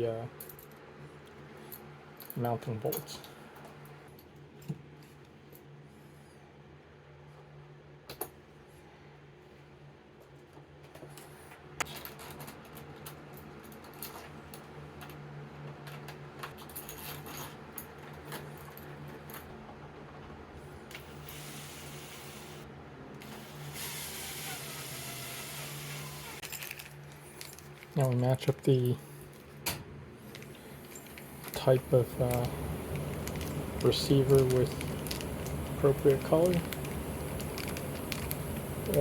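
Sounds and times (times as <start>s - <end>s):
steady low hum: 25.6s - 39.0s.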